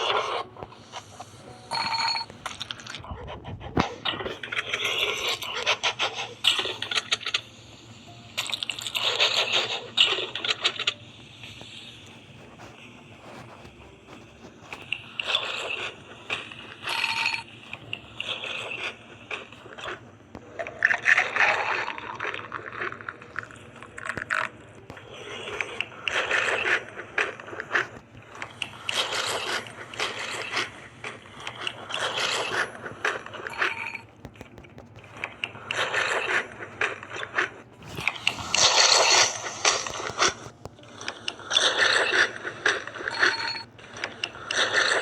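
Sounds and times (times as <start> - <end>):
crunchy food being eaten: 11.6 - 45.0.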